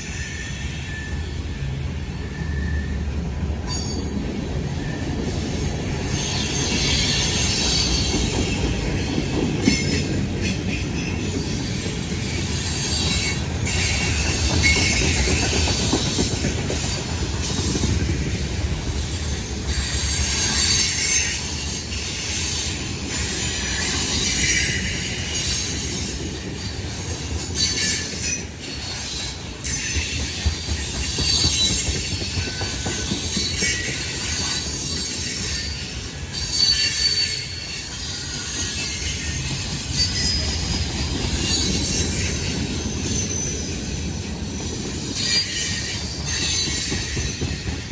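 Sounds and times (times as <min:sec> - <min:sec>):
high-pitched wheel squeals: 0:00.0 - 0:05.4, 0:27.6 - 0:43.9
train wheels rumbling on rail: 0:00.0 - 0:47.9
train wheel clacks: 0:03.5 - 0:47.9.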